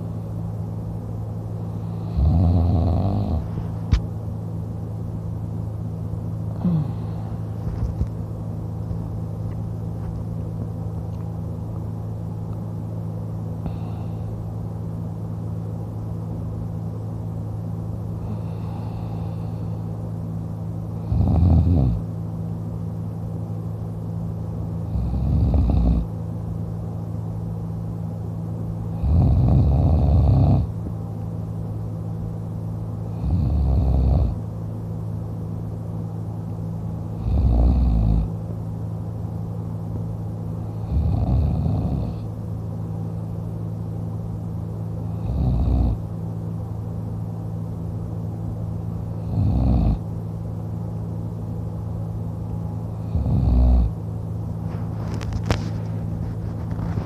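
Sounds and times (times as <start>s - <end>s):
low background hum: 0.0s - 57.0s
man snoring: 1.8s - 3.5s, 6.5s - 7.3s, 18.2s - 19.7s, 21.0s - 22.0s, 24.8s - 26.1s, 28.9s - 30.7s, 33.1s - 34.4s, 37.2s - 38.3s, 40.7s - 42.3s, 45.1s - 46.0s, 49.2s - 50.0s, 53.0s - 54.0s.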